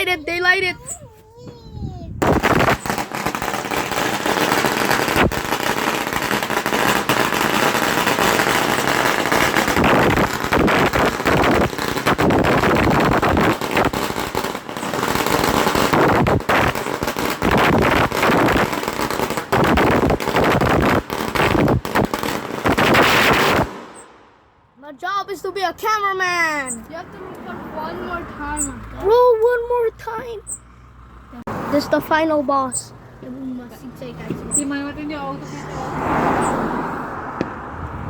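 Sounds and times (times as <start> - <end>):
firecrackers crackling: 2.2 - 24.4.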